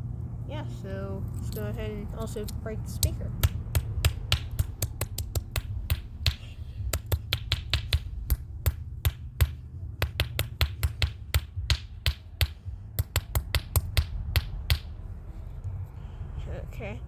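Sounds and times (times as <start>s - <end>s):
steady low hum: 0.0s - 17.0s
tool hammering plastic: 3.0s - 15.1s.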